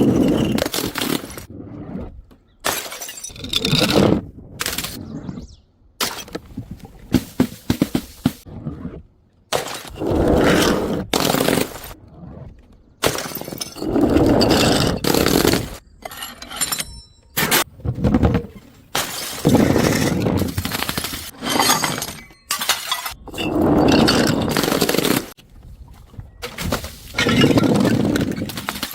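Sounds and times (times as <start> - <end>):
glass bottles smashing: 2.7 - 3.7, 13.0 - 15.0, 19.0 - 25.4.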